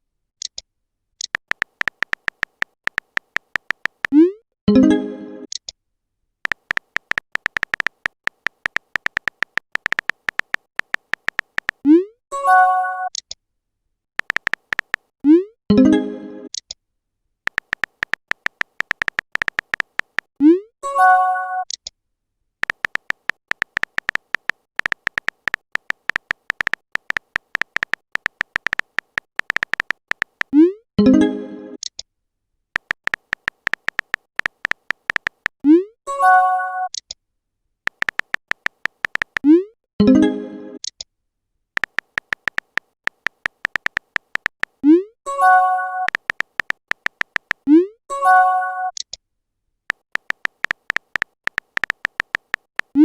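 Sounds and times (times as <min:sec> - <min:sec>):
phone keyboard clicks: 0:01.2 - 0:04.2, 0:06.4 - 0:11.9, 0:14.2 - 0:15.1, 0:17.5 - 0:20.3, 0:22.6 - 0:30.6, 0:32.8 - 0:35.6, 0:37.9 - 0:39.5, 0:41.8 - 0:44.9, 0:46.0 - 0:47.7, 0:49.9 - 0:53.0.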